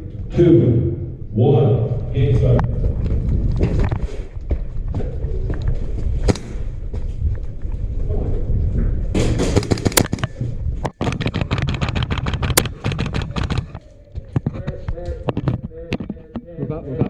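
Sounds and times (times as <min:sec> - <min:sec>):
airsoft guns firing: 0:09.2 - 0:10.3.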